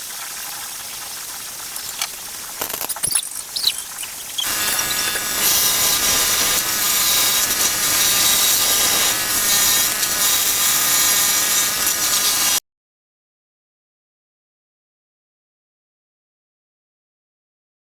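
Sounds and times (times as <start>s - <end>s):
power tool whine: 1.7s - 12.6s.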